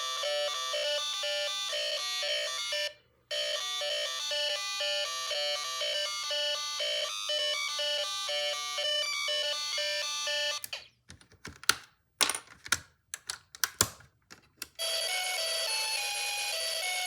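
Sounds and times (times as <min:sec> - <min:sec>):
electronic siren beeps: 0:04.6 - 0:10.9
sharp clicks and knocks: 0:10.6 - 0:14.8.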